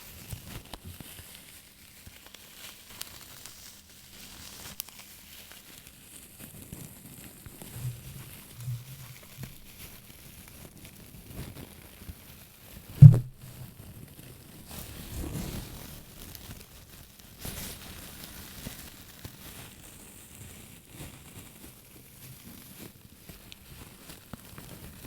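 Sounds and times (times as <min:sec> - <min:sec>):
loud low thump: 0:13.0 - 0:13.4, 0:14.6 - 0:16.3.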